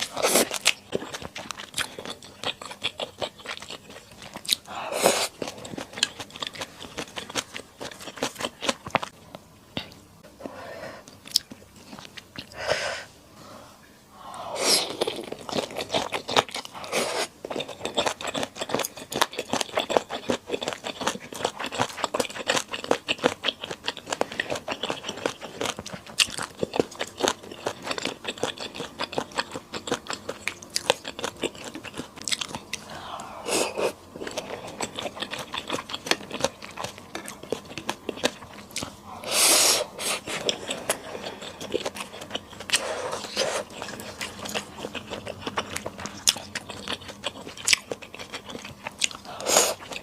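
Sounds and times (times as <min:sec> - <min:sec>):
close chewing and crunching: 0:00.0 - 0:10.1, 0:11.1 - 0:12.6, 0:14.8 - 0:50.0
noisy sucking sounds: 0:39.2 - 0:40.3.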